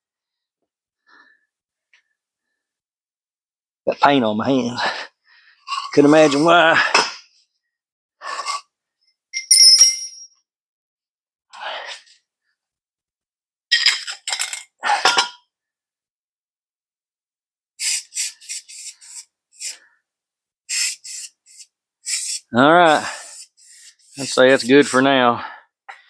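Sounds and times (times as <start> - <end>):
short metallic clink: 9.4 - 10.4.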